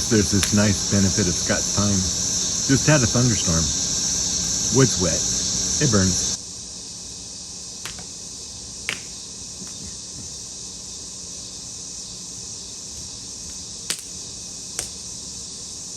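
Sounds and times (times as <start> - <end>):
steady high hiss: 0.0 - 15.9
wood fire crackling pops: 0.1 - 0.9, 7.8 - 8.1, 8.9 - 9.9, 13.0 - 15.0.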